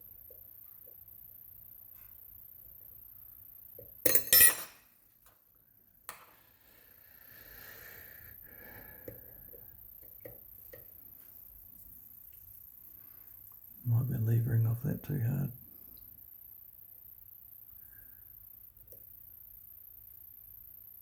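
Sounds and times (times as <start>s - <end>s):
metal picking tools clinking: 4.1s - 4.8s.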